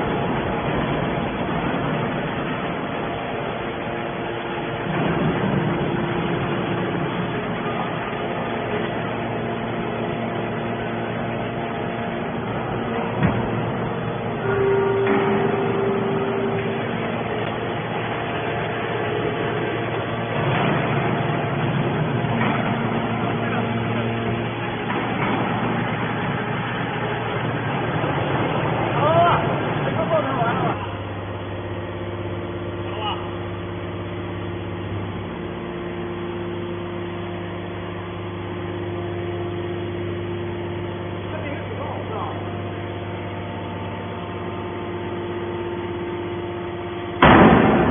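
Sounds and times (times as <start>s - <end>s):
hydraulic baler mechanical din: 0.0s - 47.9s
steady tone: 5.4s - 24.9s.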